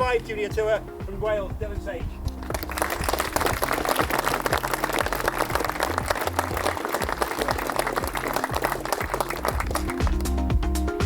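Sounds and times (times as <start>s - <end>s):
background music with bass line: 0.0s - 11.0s
crowd applauding: 2.4s - 10.4s.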